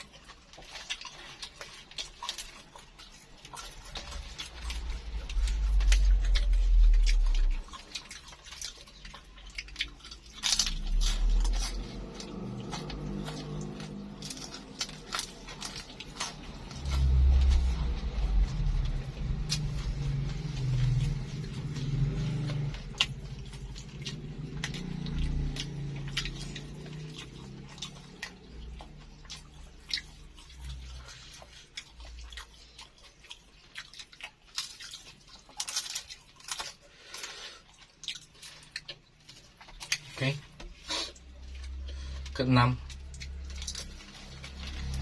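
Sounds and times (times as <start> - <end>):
crunchy chewing: 0.0 - 45.0
low rumble: 3.5 - 32.4, 38.7 - 45.0.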